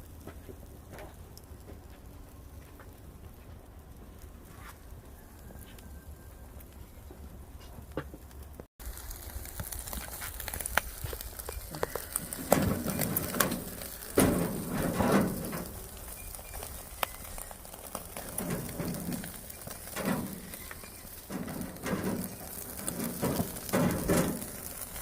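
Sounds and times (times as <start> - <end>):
wood fire crackling and popping: 0.0 - 25.0
fish sizzling on grill: 4.2 - 6.7, 8.3 - 25.0.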